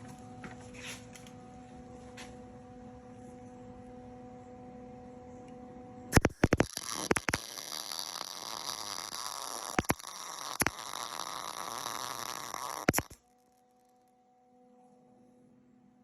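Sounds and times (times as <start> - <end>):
sharp welding pops: 6.1 - 13.2
welding arc crackling: 6.1 - 13.8.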